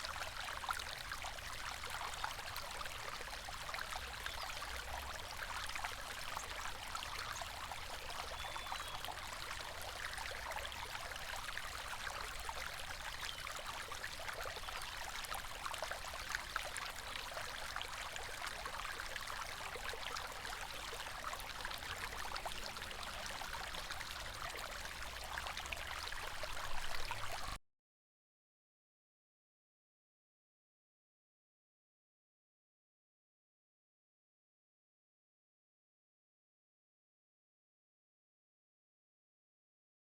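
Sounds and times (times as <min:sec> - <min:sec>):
river water flowing: 0:00.0 - 0:27.6.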